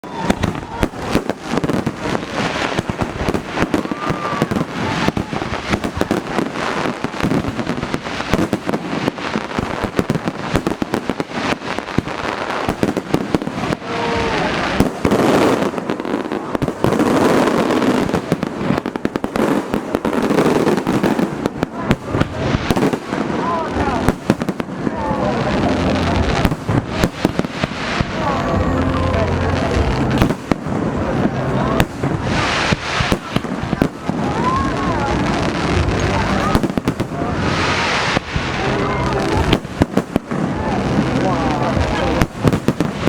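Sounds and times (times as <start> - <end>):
firework whistle: 0.0 - 18.4
fireworks bangs and crackling: 0.0 - 43.0.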